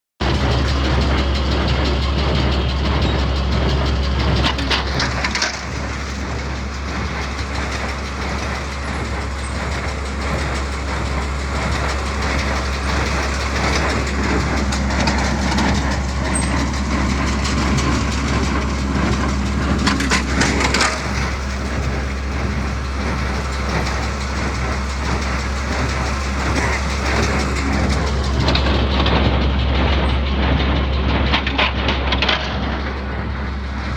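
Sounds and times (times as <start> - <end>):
baler machinery clattering: 0.2 - 33.9
tractor engine running: 0.2 - 33.9.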